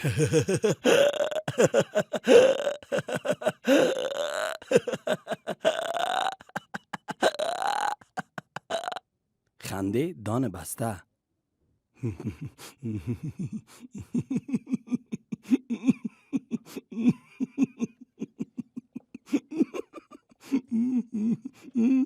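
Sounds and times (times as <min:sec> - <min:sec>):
person laughing through nose: 0:00.0 - 0:09.0.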